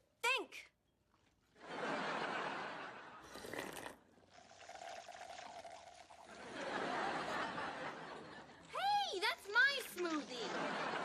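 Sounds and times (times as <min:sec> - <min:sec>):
liquid pouring and gurgling: 0:03.2 - 0:06.6.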